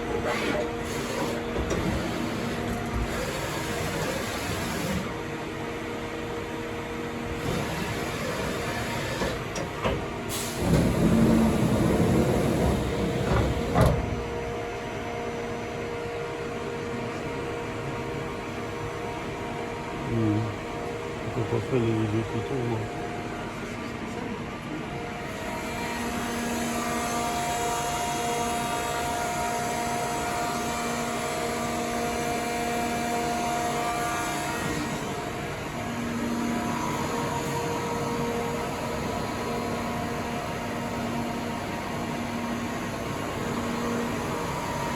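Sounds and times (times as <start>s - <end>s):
machine motor hum: 10.4s - 14.5s, 25.1s - 44.9s.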